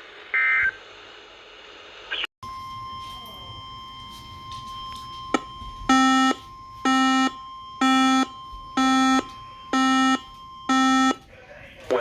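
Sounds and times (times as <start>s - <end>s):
harsh electronic alert buzzer: 5.9s - 11.2s.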